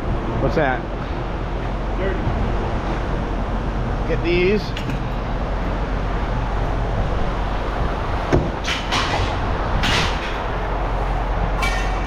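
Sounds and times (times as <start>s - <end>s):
scrap metal clanking: 11.6s - 12.0s.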